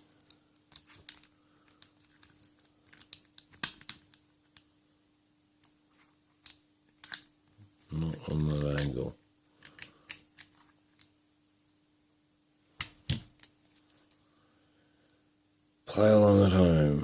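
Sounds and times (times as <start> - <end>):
small metal parts clicking: 0.2 - 4.2, 5.6 - 7.3, 9.6 - 11.1.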